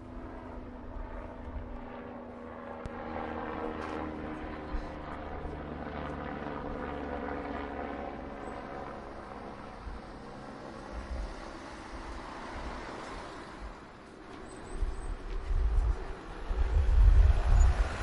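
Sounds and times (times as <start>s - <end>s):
airplane engine drone: 0.0s - 18.0s
wind on microphone: 10.8s - 13.8s, 14.7s - 18.0s.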